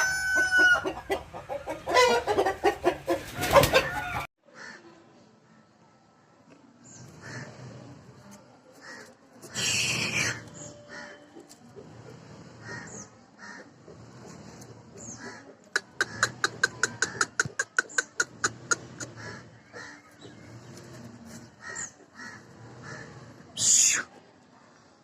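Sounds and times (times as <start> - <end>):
birds calling: 6.8 - 24.2.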